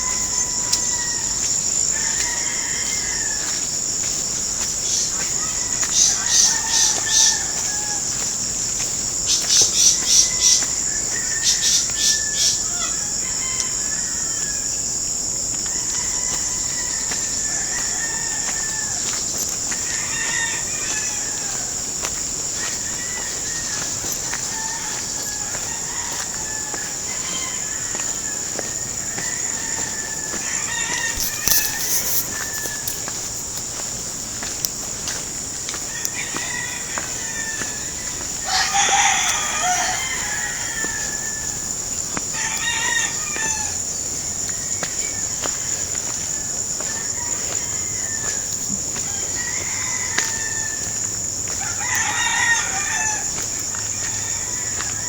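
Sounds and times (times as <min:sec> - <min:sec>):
insect drone: 0:00.0 - 0:55.0
roosters crowing: 0:00.0 - 0:55.0
chickens clucking: 0:19.9 - 0:33.6.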